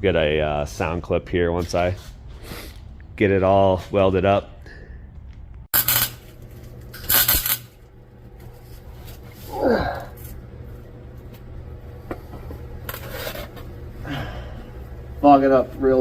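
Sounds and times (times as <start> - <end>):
steady low hum: 0.0 - 16.0
welding crackling hiss: 5.8 - 6.2.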